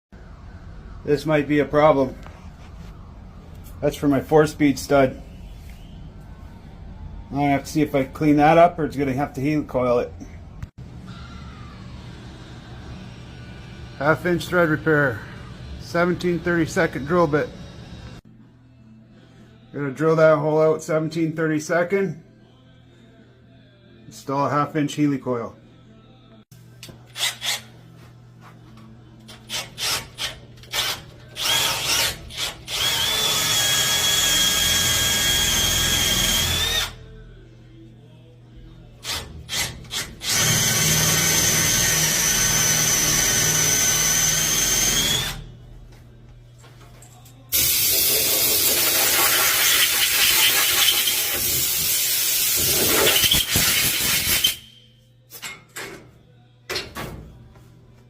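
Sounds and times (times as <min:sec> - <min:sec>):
power drill whining: 0:30.7 - 0:37.0, 0:39.5 - 0:45.4.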